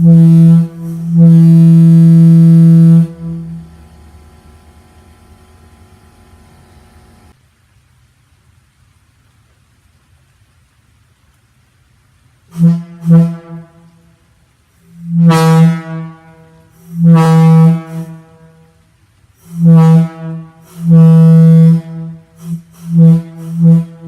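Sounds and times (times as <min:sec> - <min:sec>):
locomotive air horn blasts: 0:00.0 - 0:06.0, 0:12.5 - 0:14.2, 0:14.8 - 0:18.8, 0:19.4 - 0:24.0.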